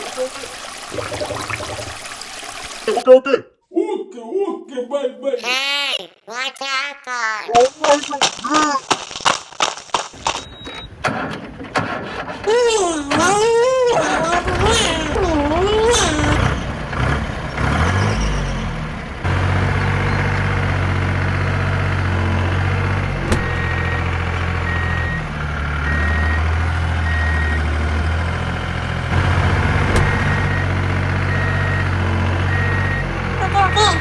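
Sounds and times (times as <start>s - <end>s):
reversing alarm beeping: 10.4s - 11.0s, 23.3s - 27.8s, 29.2s - 33.1s
vehicle engine running: 14.5s - 34.0s.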